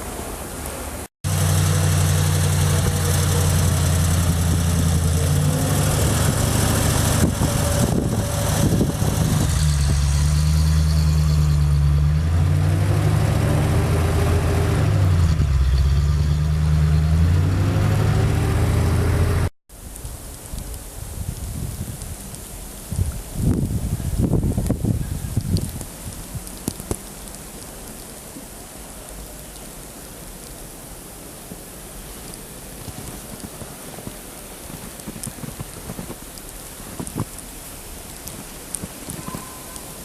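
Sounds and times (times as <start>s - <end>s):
vehicle engine running: 1.2s - 19.5s.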